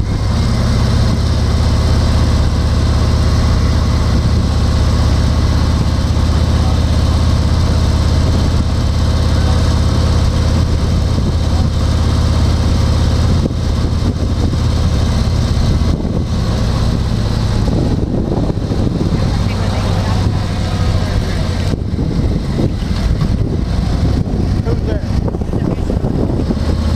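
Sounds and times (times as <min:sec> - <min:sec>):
car engine and road noise: 0:00.0 - 0:26.9.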